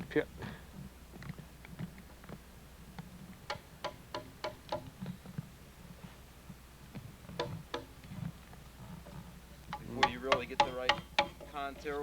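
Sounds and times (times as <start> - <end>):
sharp knocks on wood: 3.5 - 4.9, 7.4 - 7.9, 9.7 - 11.9.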